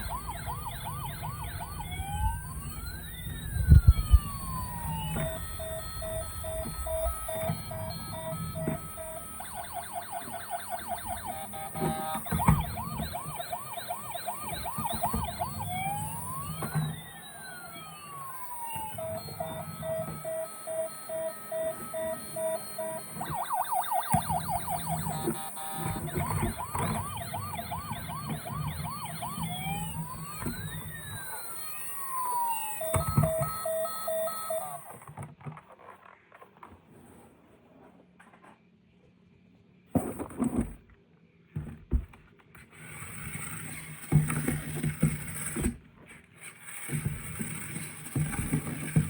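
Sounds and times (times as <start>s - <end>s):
toy electronic siren: 0.0s - 35.2s, 46.6s - 49.0s.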